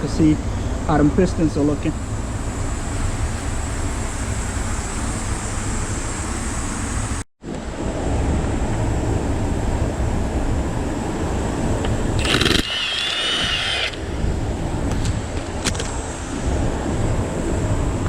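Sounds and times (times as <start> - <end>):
low rumbling noise: 0.0 - 18.0
power tool whirring: 12.2 - 14.1.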